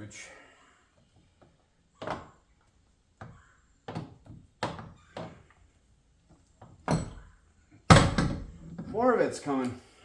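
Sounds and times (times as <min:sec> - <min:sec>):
metal parts knocking and clunking: 0:06.6 - 0:09.0.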